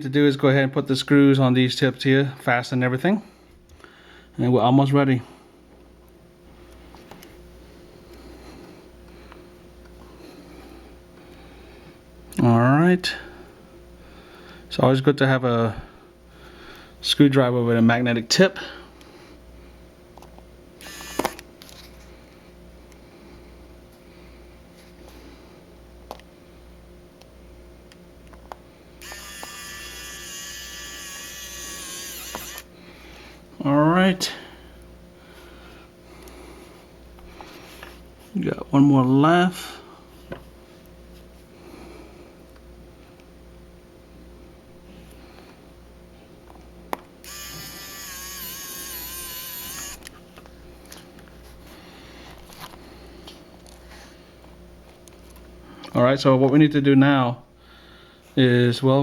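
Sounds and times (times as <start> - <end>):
electric screwdriver motor whine: 20.8 - 21.4, 29.0 - 32.7, 47.2 - 50.1.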